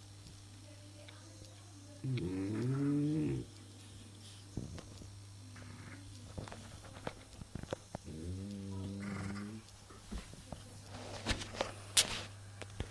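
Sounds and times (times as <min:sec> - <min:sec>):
steady low hum: 0:00.0 - 0:12.9
dog snoring: 0:02.0 - 0:03.5, 0:08.0 - 0:09.7.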